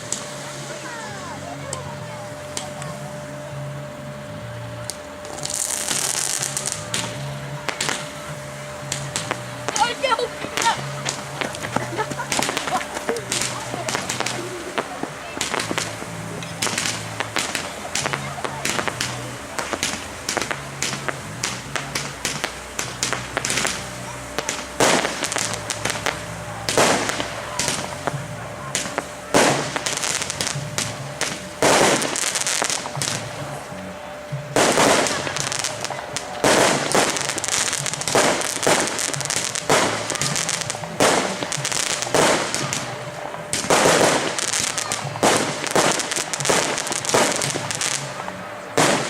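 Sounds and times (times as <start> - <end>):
fireworks bangs and crackling: 0.0 - 49.0.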